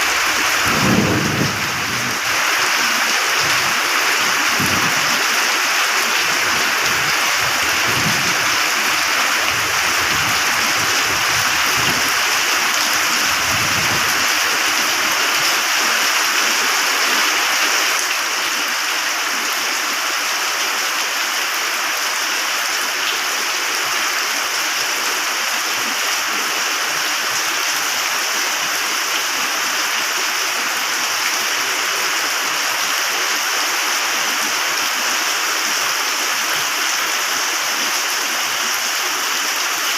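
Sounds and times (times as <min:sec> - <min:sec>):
heavy rain: 0:00.0 - 0:39.9
distant thunder rumbling: 0:00.1 - 0:02.3.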